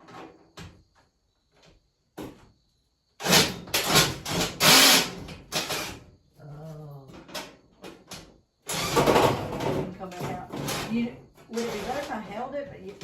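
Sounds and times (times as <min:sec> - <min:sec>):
power drill driving screw into wood: 0:03.2 - 0:06.0, 0:08.7 - 0:09.3.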